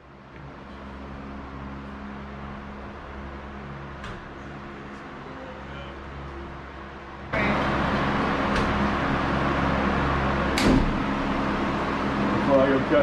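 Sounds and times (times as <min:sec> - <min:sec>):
low hum: 0:00.0 - 0:13.0
machine rushing drone: 0:00.6 - 0:13.0
sharp knock: 0:10.6 - 0:11.0.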